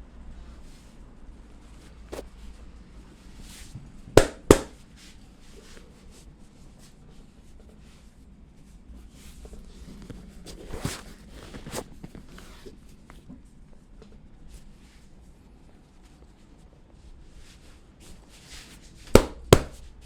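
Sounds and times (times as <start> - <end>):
hands rubbing and rustling: 3.4 - 8.0, 9.0 - 13.3
sharp slaps: 4.2 - 4.8, 19.2 - 19.9.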